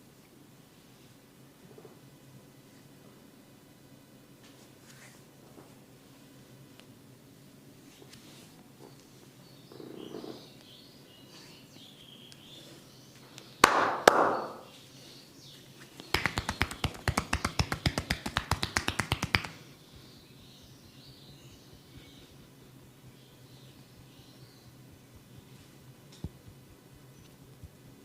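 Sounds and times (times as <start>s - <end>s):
faint bird chirps: 8.8s - 13.6s, 19.6s - 25.8s
hands slapping skin: 13.6s - 14.6s, 16.0s - 19.6s
percussive massage strikes: 13.6s - 14.7s, 16.0s - 19.6s.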